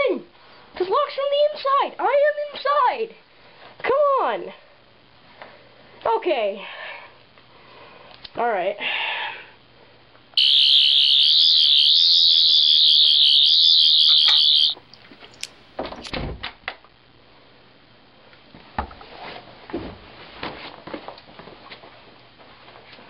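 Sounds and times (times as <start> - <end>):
high warbling electronic whine: 10.4 - 14.8.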